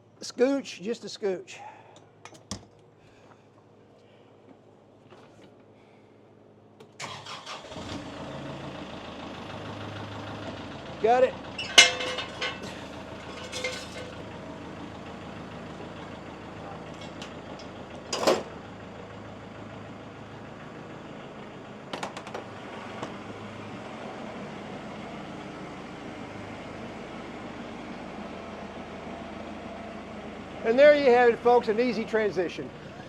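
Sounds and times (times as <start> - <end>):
low mechanical hum: 0.0 - 7.1, 10.9 - 33.0
sharp metallic clank: 11.6 - 14.2.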